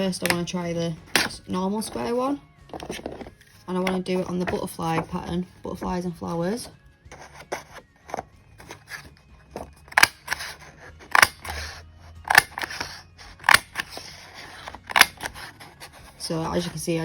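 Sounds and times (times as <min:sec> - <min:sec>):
hole punch snapping through paper: 0:01.1 - 0:02.0, 0:07.1 - 0:15.7
paper handling: 0:01.1 - 0:05.9.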